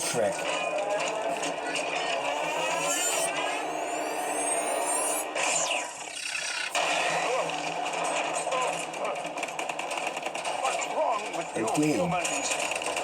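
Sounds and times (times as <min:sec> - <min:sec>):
action film sound effects: 0:00.0 - 0:13.0
rising sweeping tones: 0:01.1 - 0:06.5.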